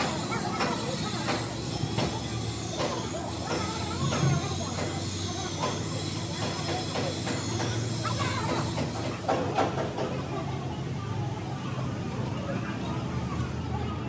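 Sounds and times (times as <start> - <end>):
knocks and clanks: 0.0 - 10.2.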